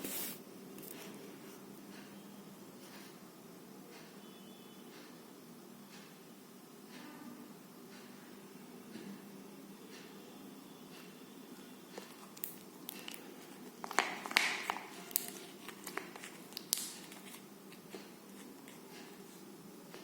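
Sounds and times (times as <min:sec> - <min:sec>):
slime clicking and popping: 0:13.8 - 0:17.3.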